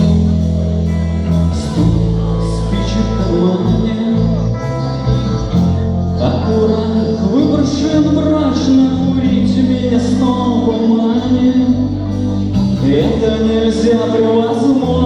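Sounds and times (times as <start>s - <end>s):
instrumental rock music with guitar: 0.0s - 15.0s.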